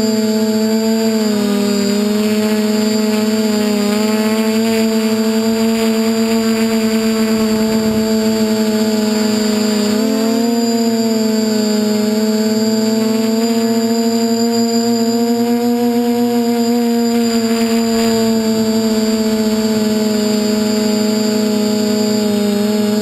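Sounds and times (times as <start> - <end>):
drone motors and propellers whirring: 0.0 - 23.0.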